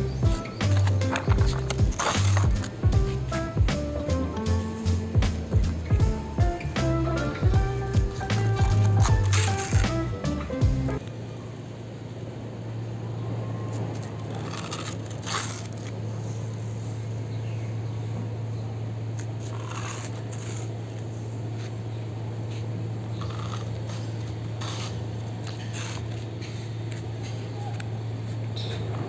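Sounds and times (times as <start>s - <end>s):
scrapes and clicks: 0.0s - 4.5s
steady low hum: 0.0s - 15.2s.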